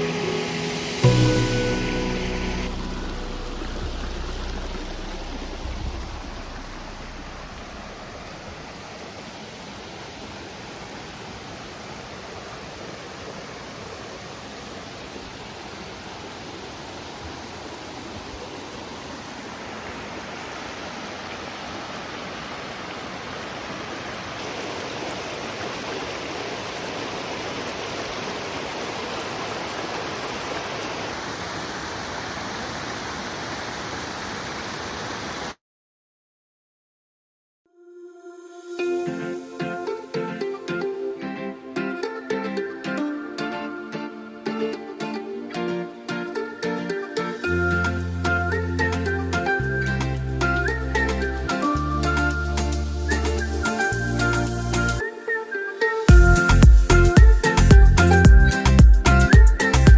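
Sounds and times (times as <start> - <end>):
flowing water rushing: 0.0 - 35.6.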